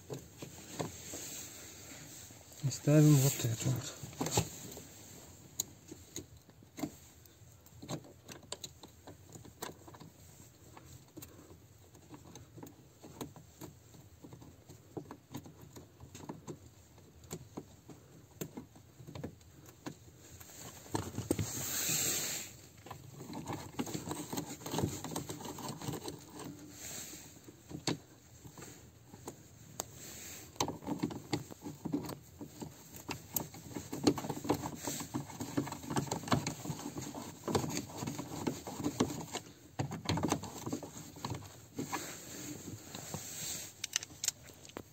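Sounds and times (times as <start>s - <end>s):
rustling hiss: 21.3s - 22.8s
tools and metal parts rattling: 43.7s - 44.9s.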